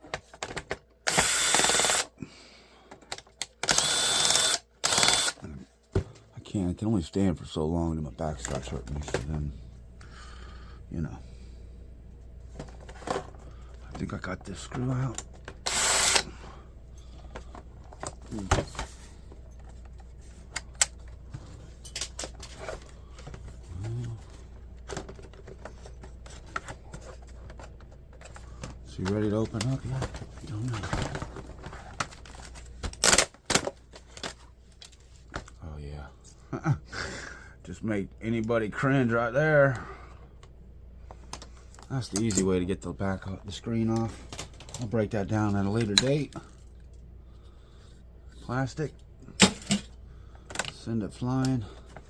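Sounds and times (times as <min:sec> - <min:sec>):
cordless drill running: 0:01.0 - 0:02.1, 0:03.6 - 0:05.4, 0:15.6 - 0:16.3.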